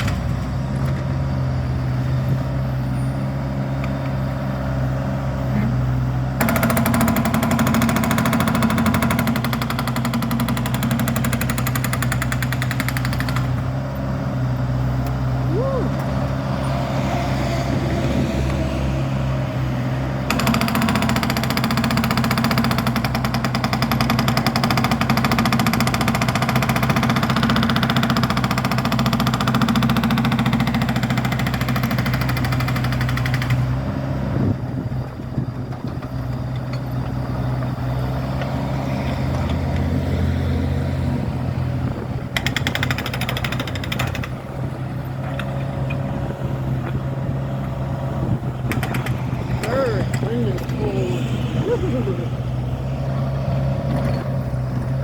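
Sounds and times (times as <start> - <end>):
construction machinery engine running: 0.0 - 55.0
jackhammer hammering: 6.4 - 13.7, 20.2 - 33.7, 42.3 - 44.5, 48.3 - 52.1.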